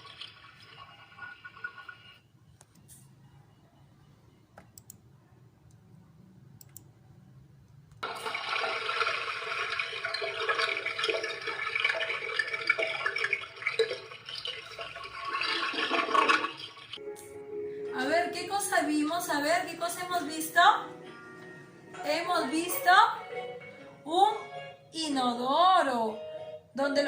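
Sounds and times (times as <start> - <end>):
toilet flushing: 0.0 - 2.2, 8.0 - 17.0
faint clicks: 4.6 - 5.0, 6.6 - 6.9.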